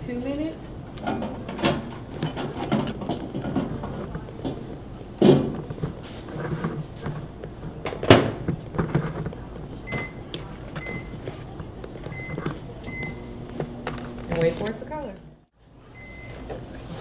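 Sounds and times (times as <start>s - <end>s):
microwave keypad beeps: 9.8s - 14.5s, 16.0s - 16.4s.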